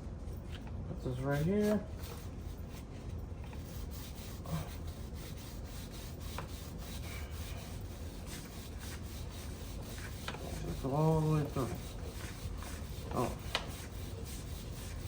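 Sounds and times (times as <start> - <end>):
brush scrubbing chain: 3.5 - 15.0.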